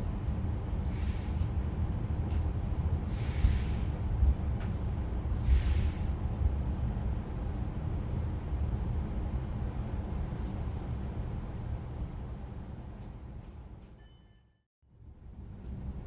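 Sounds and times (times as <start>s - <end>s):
train rumble inside carriage: 0.0s - 16.0s
short air hisses: 0.9s - 1.4s, 3.1s - 4.0s, 5.4s - 6.2s.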